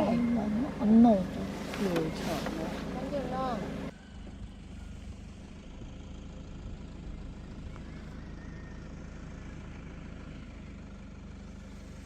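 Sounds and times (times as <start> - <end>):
road noise: 0.0 - 12.0
vehicle engine rumbling: 0.0 - 12.0.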